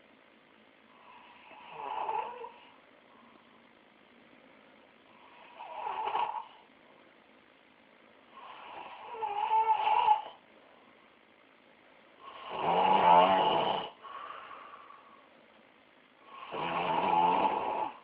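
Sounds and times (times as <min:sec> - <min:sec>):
person snoring: 0:00.9 - 0:02.8, 0:05.1 - 0:06.6, 0:08.3 - 0:10.4, 0:12.2 - 0:15.0, 0:16.2 - 0:18.0
soft breath out: 0:14.0 - 0:15.4.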